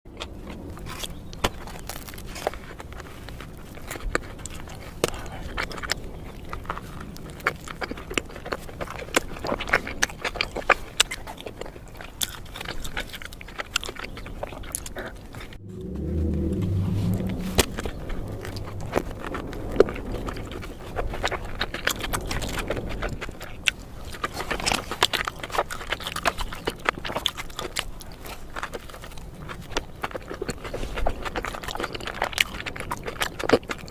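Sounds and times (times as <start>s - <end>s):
biting and chewing sandwich: 0.1s - 15.6s, 18.9s - 33.9s
low hum: 15.4s - 22.2s.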